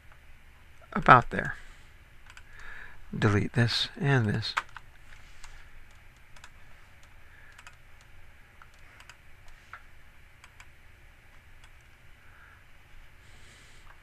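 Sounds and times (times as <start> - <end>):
low steady hum: 0.0 - 14.0
keyboard and mouse clicking: 2.2 - 2.6, 4.2 - 9.8, 10.4 - 10.7, 11.3 - 12.0.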